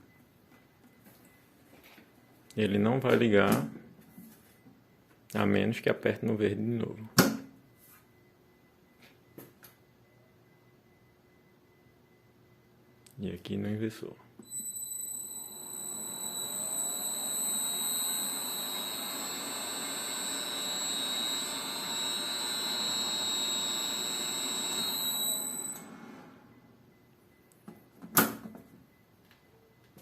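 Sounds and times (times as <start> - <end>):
high-pitched inverter whine: 14.4 - 27.6
electric motor running: 14.5 - 25.9.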